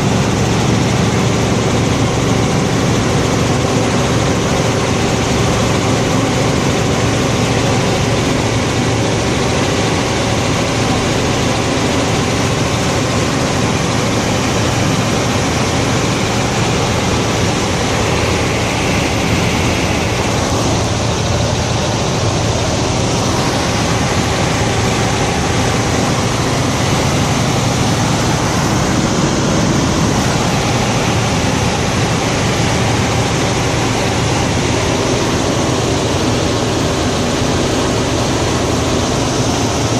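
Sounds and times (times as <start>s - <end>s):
helicopter engine and rotor drone: 0.0s - 39.9s.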